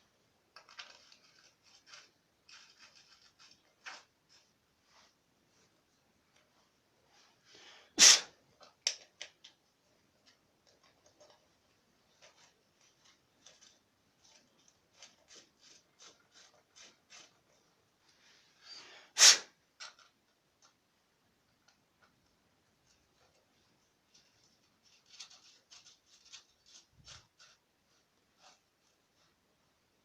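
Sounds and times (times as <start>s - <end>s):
person sneezing: 7.9s - 8.4s, 19.1s - 19.6s
faint clicks and taps: 8.6s - 18.2s, 19.8s - 27.6s.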